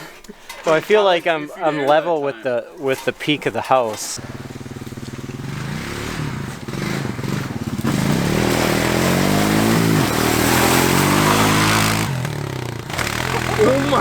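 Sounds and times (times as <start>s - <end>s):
small engine revving hard: 4.2s - 14.0s.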